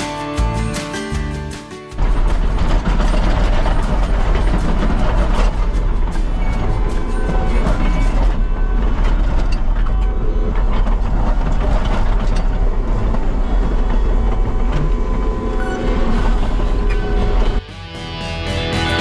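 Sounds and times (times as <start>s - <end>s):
metallic clanks: 1.9s - 15.1s, 16.0s - 17.6s
diesel engine running hard: 2.0s - 19.0s.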